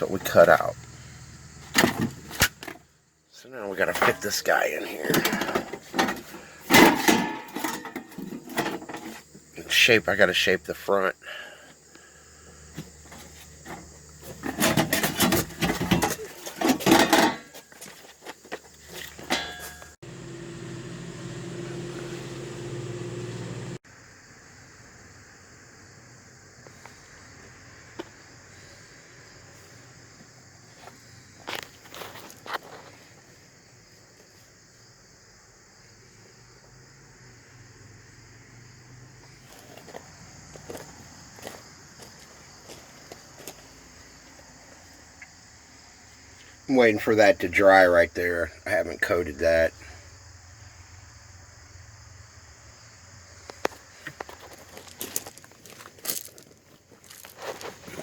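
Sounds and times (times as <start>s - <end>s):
crickets chirring: 0.0s - 20.6s, 21.2s - 58.0s
machine hum: 20.0s - 23.8s.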